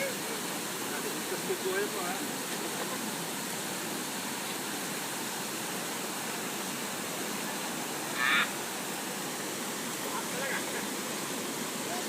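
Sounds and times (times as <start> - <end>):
flowing water rushing: 0.0 - 12.0.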